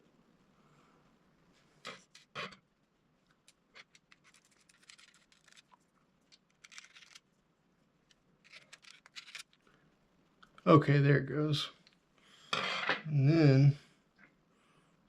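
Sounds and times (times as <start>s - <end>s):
small metal parts clicking: 3.5s - 7.2s, 8.4s - 9.6s.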